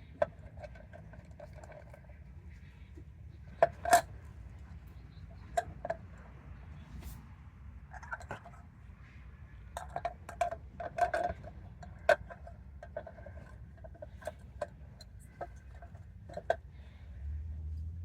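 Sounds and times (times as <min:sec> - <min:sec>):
wheel cap clicking against rim: 0:00.0 - 0:02.3, 0:02.9 - 0:06.4, 0:09.8 - 0:16.7.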